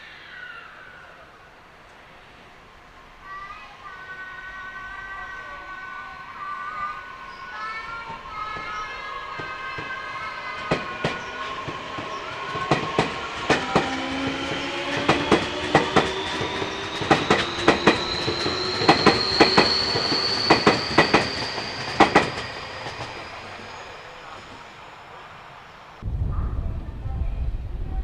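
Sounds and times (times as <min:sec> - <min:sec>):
train high whine: 0:00.0 - 0:28.0
train wheels clacking over rail joints: 0:07.7 - 0:24.6.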